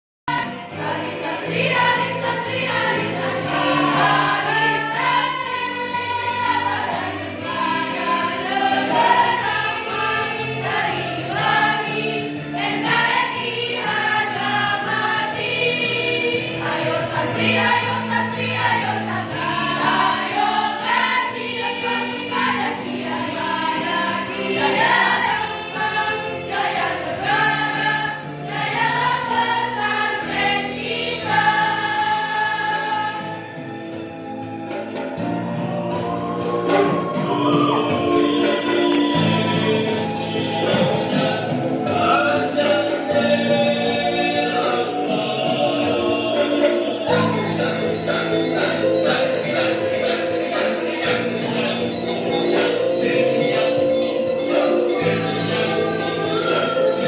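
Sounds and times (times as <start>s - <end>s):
girls' choir singing: 0.3s - 57.0s.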